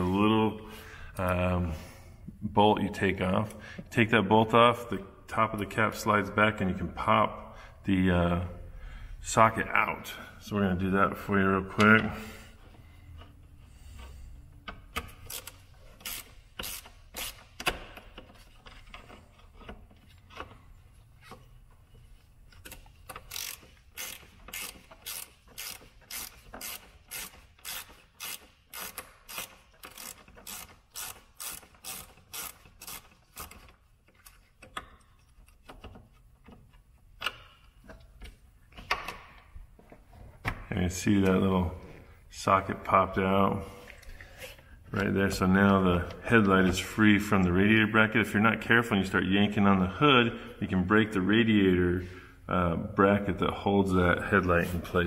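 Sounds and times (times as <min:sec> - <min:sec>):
ratchet wrench clicking: 0:14.7 - 0:17.8, 0:22.6 - 0:33.7.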